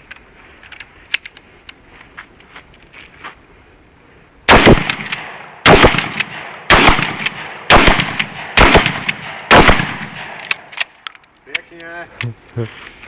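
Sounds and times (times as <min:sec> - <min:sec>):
shotgun shots echoing: 0:04.5 - 0:10.8.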